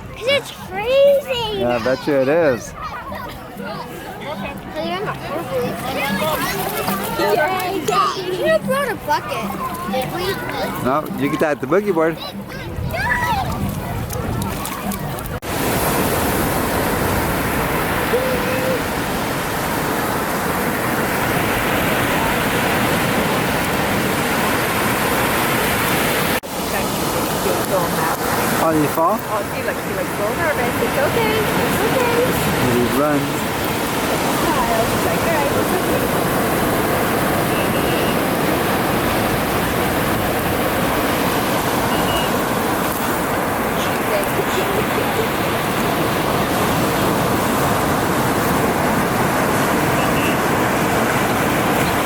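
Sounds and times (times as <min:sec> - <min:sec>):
ocean surf rushing: 0:00.0 - 0:52.0
wind on microphone: 0:12.2 - 0:28.6
small waves breaking on sand: 0:14.2 - 0:52.0
short high beeps: 0:37.4 - 0:38.3, 0:41.9 - 0:42.4.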